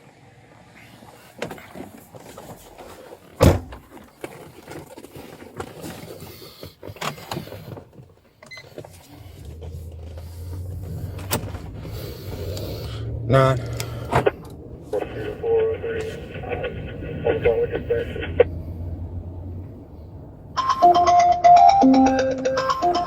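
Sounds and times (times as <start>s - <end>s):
low vehicle hum: 0.0s - 23.0s
rustling and knocking: 1.4s - 12.0s
loud sharp thump: 3.4s - 3.8s.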